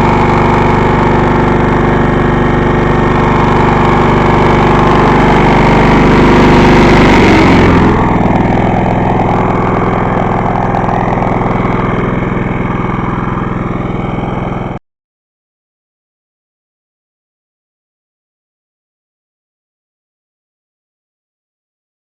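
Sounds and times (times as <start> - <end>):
lawn mower engine running: 0.0 - 14.8.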